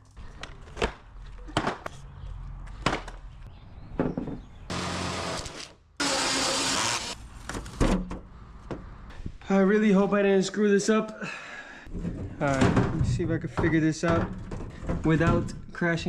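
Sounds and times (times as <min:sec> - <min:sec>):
power tool running: 0:04.7 - 0:07.2.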